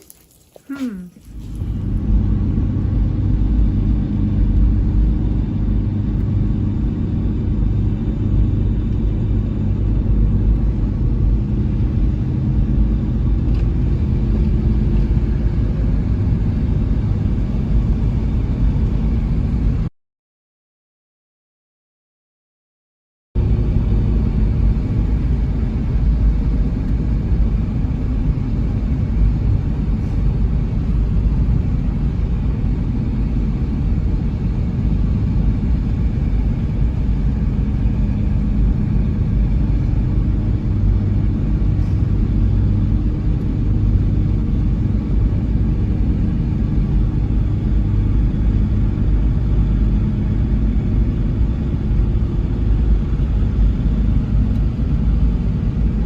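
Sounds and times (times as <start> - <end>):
motor vehicle engine rumble: 0.0 - 19.8.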